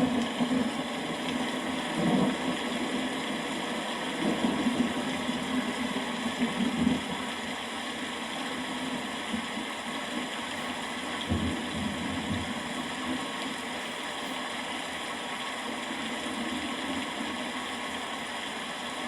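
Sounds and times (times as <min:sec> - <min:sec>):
rain falling: 0:00.0 - 0:19.0
distant thunder rumbles: 0:11.2 - 0:12.8.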